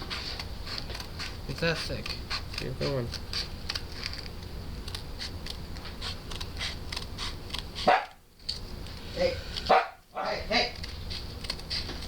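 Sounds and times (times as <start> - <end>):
grip tape being cut: 0.4 - 8.6.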